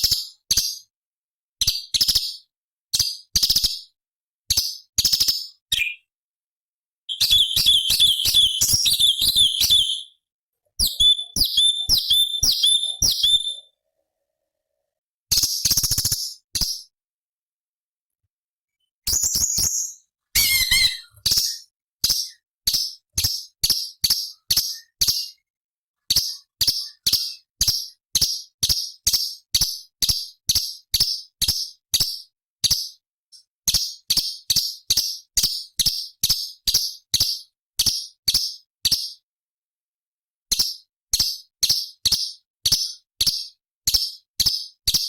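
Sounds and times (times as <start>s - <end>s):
songbird calling high notes: 7.1s - 10.2s, 10.8s - 13.7s, 20.4s - 21.6s.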